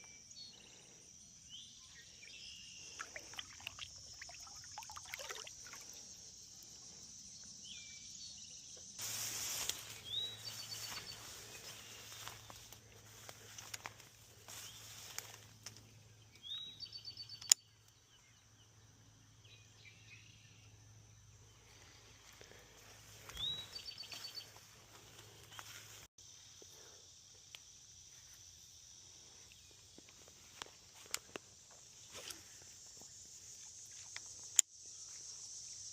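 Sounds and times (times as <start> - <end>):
high insect buzz: 0.0 - 15.8
songbird singing with trill: 16.2 - 18.7, 23.3 - 24.6.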